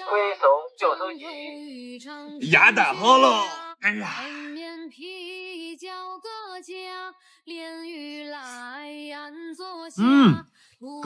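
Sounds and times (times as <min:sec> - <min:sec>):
high voice singing held notes: 0:10.0 - 0:10.4.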